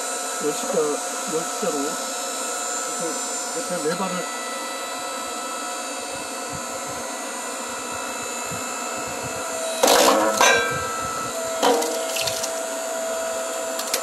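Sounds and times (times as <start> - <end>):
hydraulic motor humming: 0.4 - 14.0
wood cracking: 11.6 - 12.6, 13.8 - 14.0.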